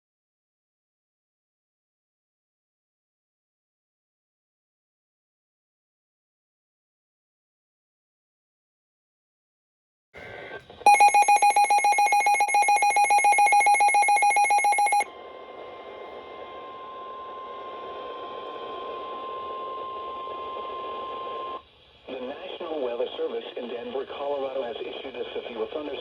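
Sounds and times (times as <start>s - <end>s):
shrill electronic beeping trill: 10.9s - 15.0s
steady alarm tone: 10.9s - 15.0s.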